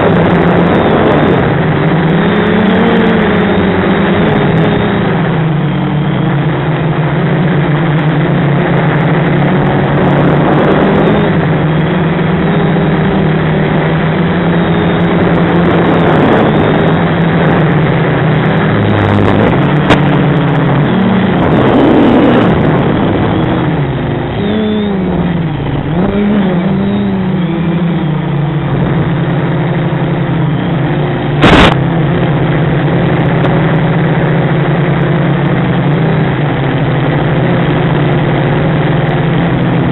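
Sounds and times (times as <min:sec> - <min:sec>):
drone motors whining: 0:00.0 - 0:32.2
loud crackle: 0:31.4 - 0:33.8.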